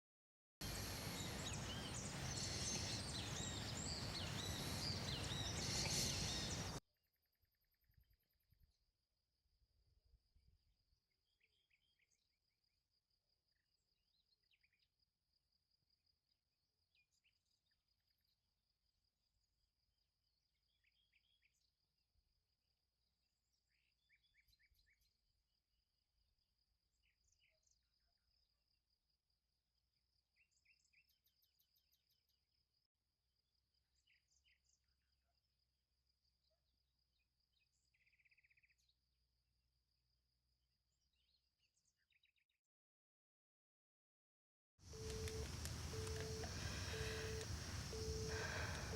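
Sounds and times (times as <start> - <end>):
bird chirps: 0.6 - 6.8, 44.9 - 48.9
brief buzz: 44.9 - 48.9
cricket trilling: 44.9 - 48.9.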